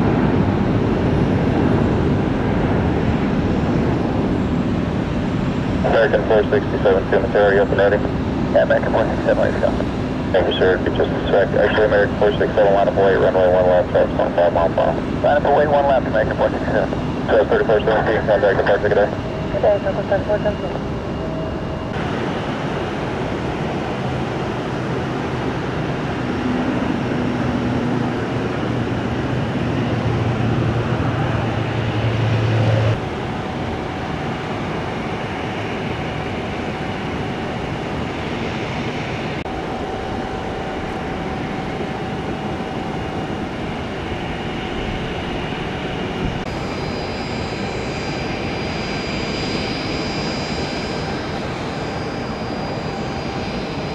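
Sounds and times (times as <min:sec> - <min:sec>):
high whine: 0:00.0 - 0:53.9
jet engines running: 0:00.0 - 0:53.9
low hum: 0:00.0 - 0:53.9.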